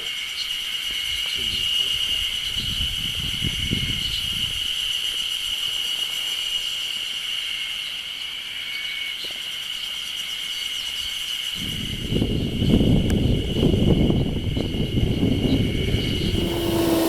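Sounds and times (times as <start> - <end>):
insects trilling: 3.5 - 17.0.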